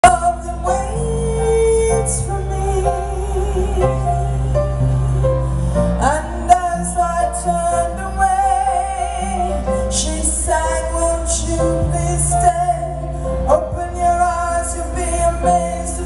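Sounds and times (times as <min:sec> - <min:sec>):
woman singing: 0:00.0 - 0:04.5.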